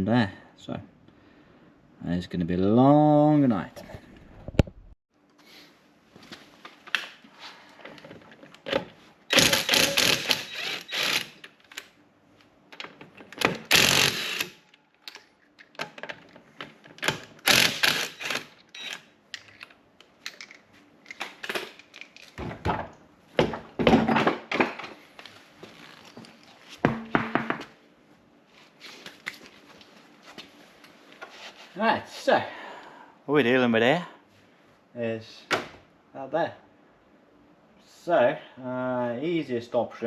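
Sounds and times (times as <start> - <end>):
tools and metal parts clattering: 19.4 - 22.9.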